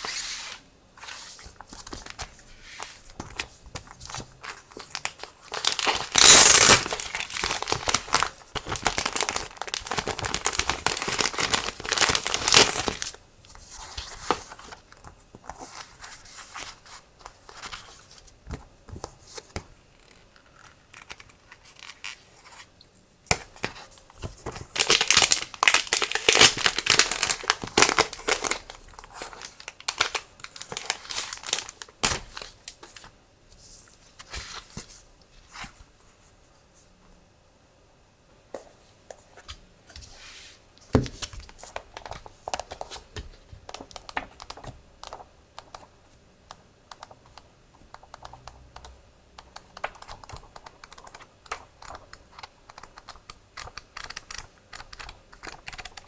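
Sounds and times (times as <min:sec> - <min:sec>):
packaging crinkling and rustling: 0:01.3 - 0:13.2, 0:23.6 - 0:34.9.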